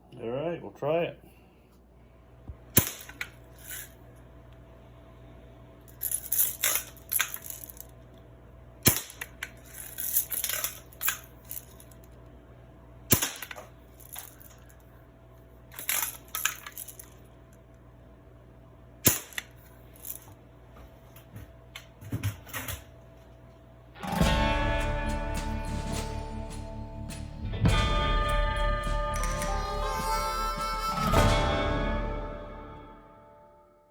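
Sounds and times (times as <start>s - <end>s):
air gun shots: 2.8s - 3.2s, 13.1s - 13.6s
music: 24.0s - 33.9s.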